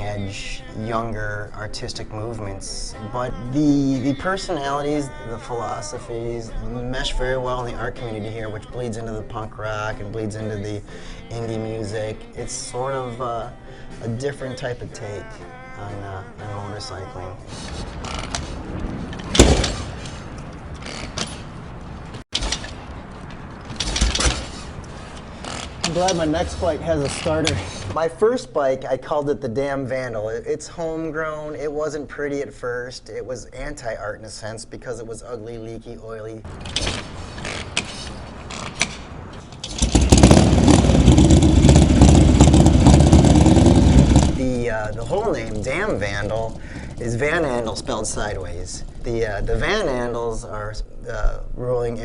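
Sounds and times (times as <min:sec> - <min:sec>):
motorcycle kickstarter clunk: 0:19.1 - 0:21.5, 0:22.4 - 0:24.8, 0:36.5 - 0:44.4.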